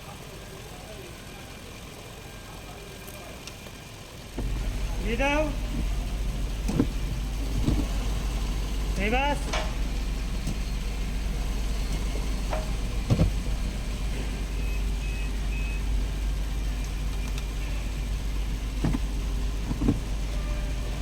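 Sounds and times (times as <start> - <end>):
vehicle engine idling: 0.0 - 21.0
faint beeps: 14.5 - 15.9.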